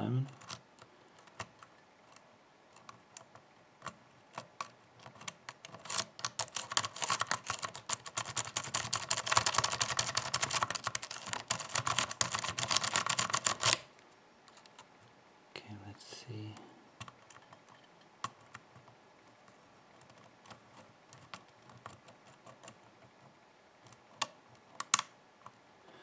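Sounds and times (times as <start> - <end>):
lock pick clicking in lock: 0.3 - 2.2, 2.8 - 13.9, 23.9 - 25.1.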